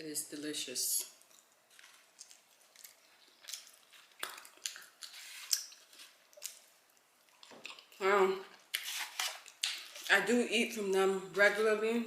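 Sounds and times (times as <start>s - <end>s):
person chewing food: 1.1s - 10.1s.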